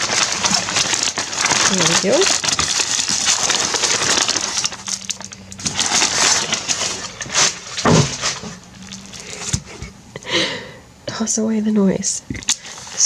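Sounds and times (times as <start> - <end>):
packing material crinkling: 0.0 - 10.0.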